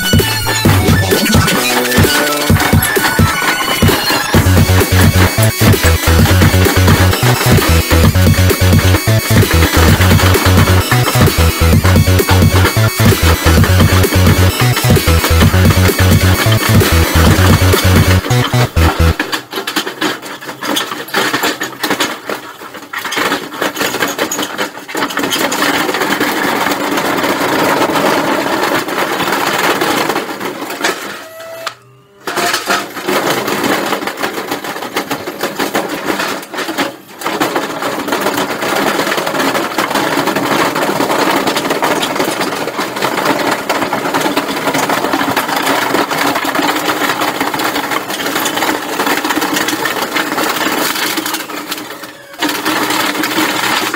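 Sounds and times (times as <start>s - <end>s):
machine rattling clatter: 0.0s - 31.6s, 32.2s - 53.9s.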